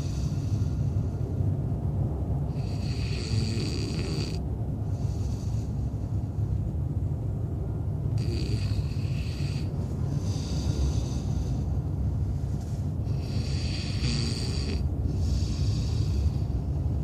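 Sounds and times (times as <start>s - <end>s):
low rumble inside a van: 0.0s - 17.0s
man snoring: 2.5s - 5.7s, 8.1s - 11.6s, 13.0s - 16.5s.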